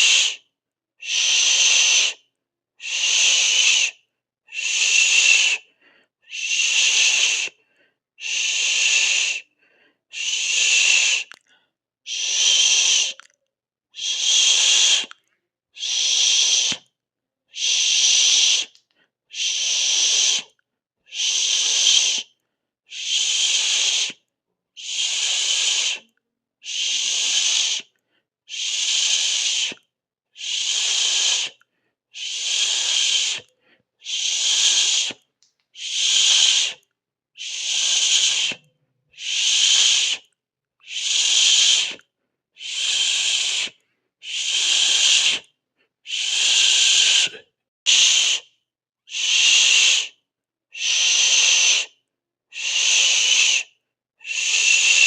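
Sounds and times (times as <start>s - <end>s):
person shushing: 12.1s - 13.3s, 14.0s - 15.2s, 24.8s - 26.1s, 32.2s - 35.2s, 35.8s - 36.8s, 42.6s - 45.5s, 46.1s - 48.5s, 54.2s - 55.0s.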